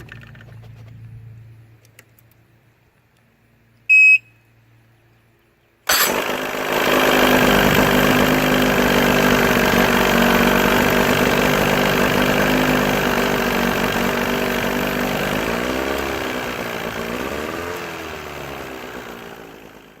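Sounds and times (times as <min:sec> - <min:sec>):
outboard motor running: 0:05.9 - 0:20.0.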